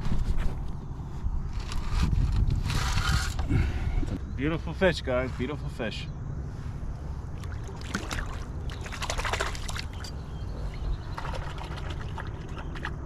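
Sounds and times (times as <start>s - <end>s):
steady low rumble: 0.0s - 13.0s
knocks and splashes: 7.4s - 10.2s, 11.1s - 13.0s.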